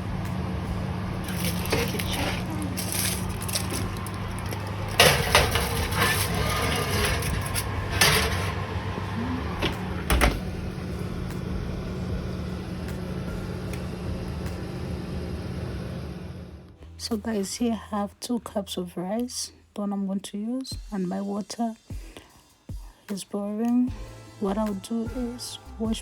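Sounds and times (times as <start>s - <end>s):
steady low hum: 0.0s - 18.0s
metal tray and dishes clattering: 1.2s - 10.4s.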